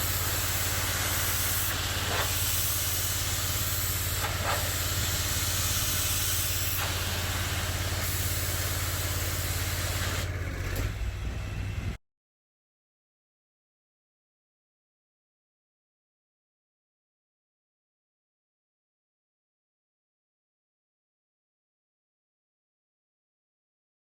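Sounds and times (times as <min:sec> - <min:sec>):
water jet hissing: 0:00.0 - 0:10.8
motor humming: 0:00.0 - 0:12.0.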